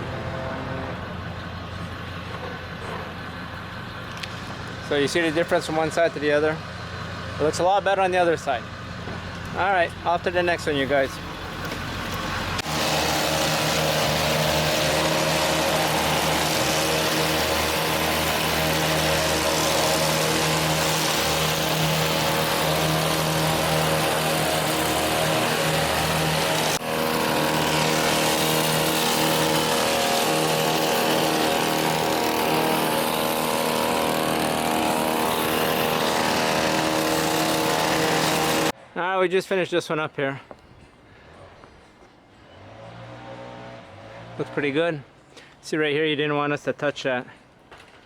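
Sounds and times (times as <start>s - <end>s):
vehicle engine and road noise: 0.0s - 39.0s, 41.0s - 45.6s.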